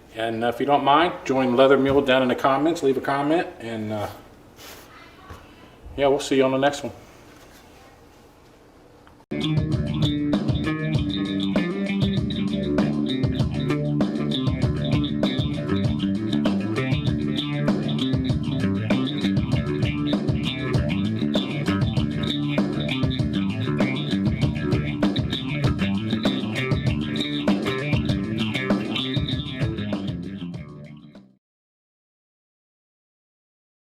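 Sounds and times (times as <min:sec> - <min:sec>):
guitar and bass instrumental: 0:09.3 - 0:31.4.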